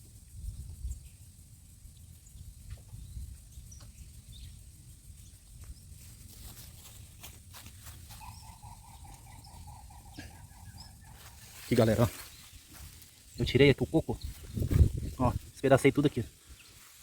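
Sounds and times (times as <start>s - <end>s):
pulsing trilling animal call: 8.1s - 11.5s
steady high hiss: 11.5s - 17.0s.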